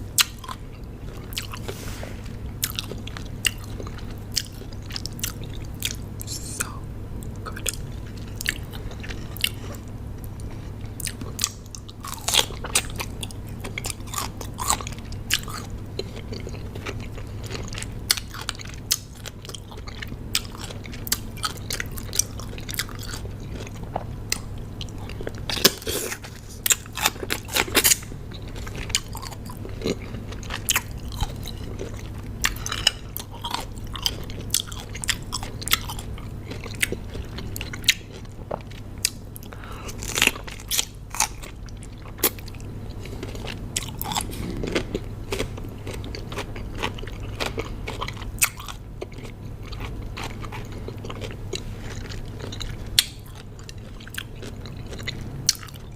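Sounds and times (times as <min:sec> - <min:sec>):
crunchy cucumber chewing: 0:00.0 - 0:55.9
steady low hum: 0:00.0 - 0:55.9.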